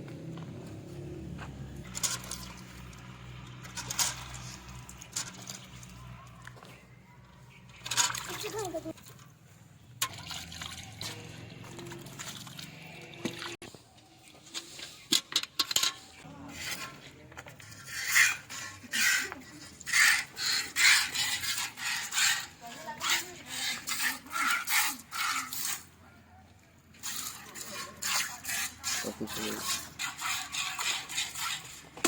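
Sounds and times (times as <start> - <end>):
milk squirting into pail: 10.0 - 13.6.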